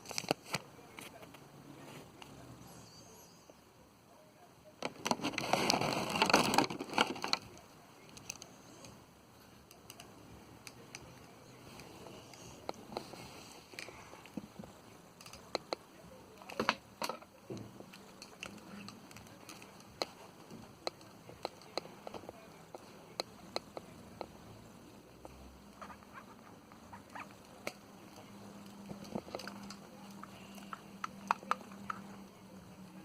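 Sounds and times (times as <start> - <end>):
small objects clicking and tapping: 27.5 - 32.2.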